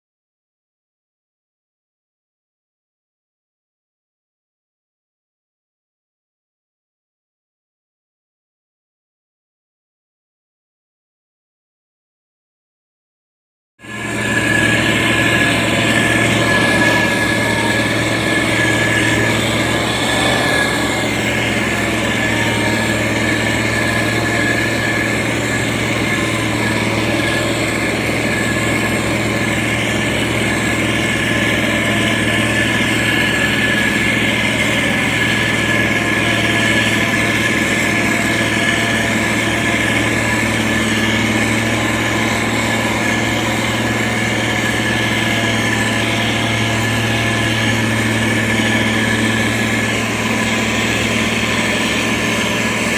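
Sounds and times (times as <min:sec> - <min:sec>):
diesel engine running steadily: 0:13.8 - 0:52.9.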